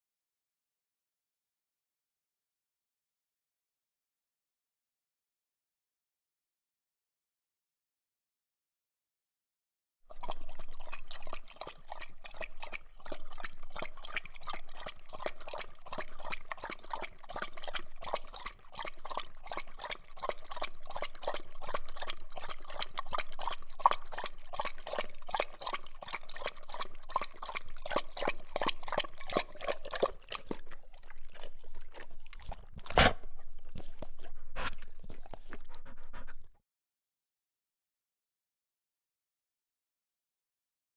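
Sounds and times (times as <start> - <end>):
dog lapping water: 10.1 - 36.6.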